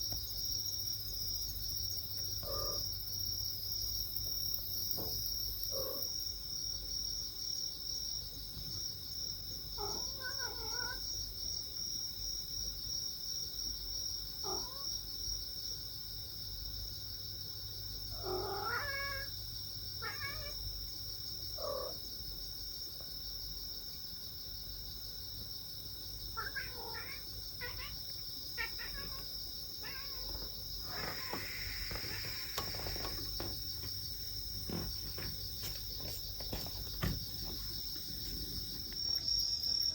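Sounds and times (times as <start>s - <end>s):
crickets chirping: 0.0s - 39.9s
cats meowing: 2.4s - 2.8s, 9.8s - 11.0s, 18.2s - 19.3s, 20.0s - 20.6s, 26.3s - 33.9s.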